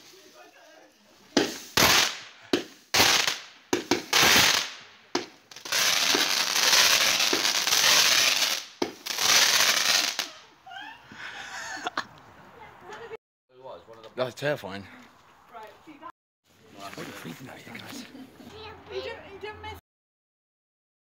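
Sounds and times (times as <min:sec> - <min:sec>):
firework bangs: 0:01.3 - 0:10.4
firework hissing spray: 0:01.3 - 0:10.4
firework sharp crack: 0:01.3 - 0:10.4.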